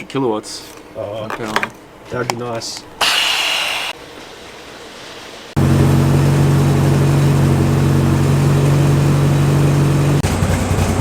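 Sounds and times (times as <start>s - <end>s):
background noise: 0.0s - 5.6s
car engine running loud: 5.6s - 11.0s.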